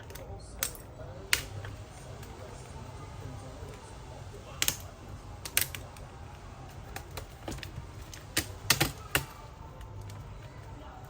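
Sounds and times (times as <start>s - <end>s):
plastic clicks and snaps: 0.0s - 2.4s, 4.5s - 6.1s, 6.7s - 10.6s
steady low hum: 0.0s - 11.0s.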